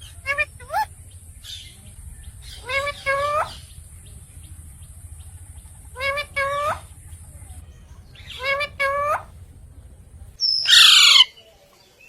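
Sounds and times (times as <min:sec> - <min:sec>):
low steady hum: 0:00.0 - 0:10.4
parakeets calling: 0:00.0 - 0:11.3.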